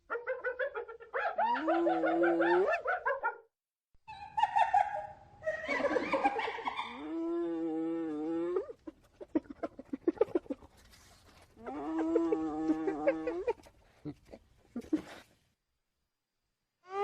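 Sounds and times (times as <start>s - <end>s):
hyena giggle-like notes: 11.7s - 15.3s.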